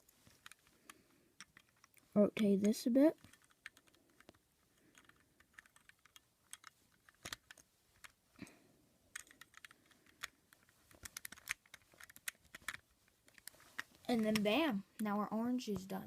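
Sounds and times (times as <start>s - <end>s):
plastic cube pieces clicking: 0.2s - 2.0s, 3.2s - 8.2s, 9.1s - 15.1s.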